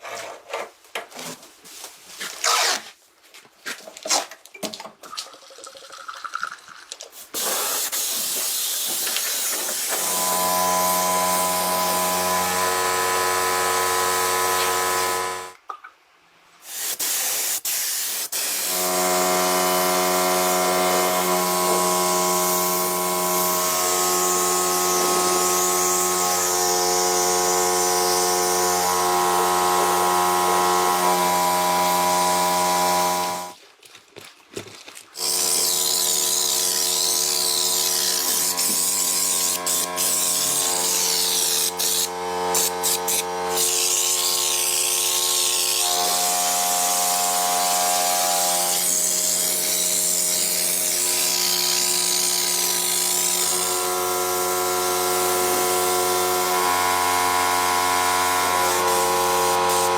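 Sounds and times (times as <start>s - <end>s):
electric power tool running: 9.1s - 15.6s, 18.6s - 33.6s, 35.2s - 59.9s.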